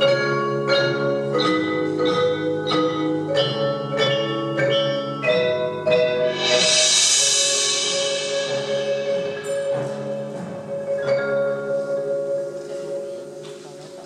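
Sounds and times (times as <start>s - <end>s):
marimba notes: 0.0s - 14.0s
bright shimmering wash: 6.1s - 10.4s.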